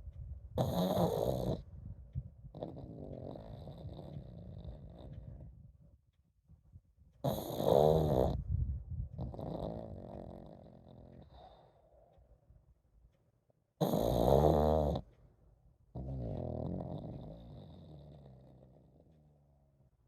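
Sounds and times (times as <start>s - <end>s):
dog snoring: 0.6s - 1.7s, 2.4s - 5.6s, 7.2s - 8.5s, 9.2s - 11.9s, 13.8s - 15.1s, 15.9s - 19.8s.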